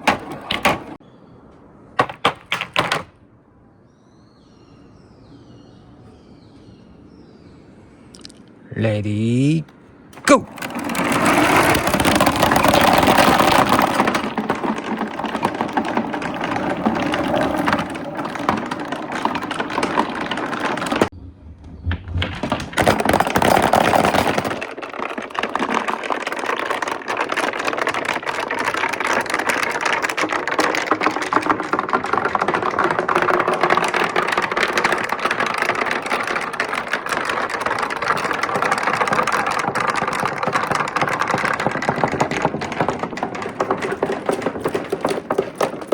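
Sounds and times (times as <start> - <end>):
marbles clattering down wooden run: 0.0 - 1.0, 10.2 - 21.2, 21.8 - 45.9.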